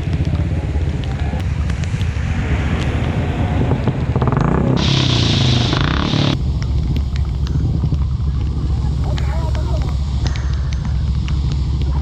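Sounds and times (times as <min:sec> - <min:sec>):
motorcycle engine rumbling: 0:00.0 - 0:12.0
road and wind noise: 0:00.0 - 0:12.0
loud hiss: 0:04.2 - 0:12.0.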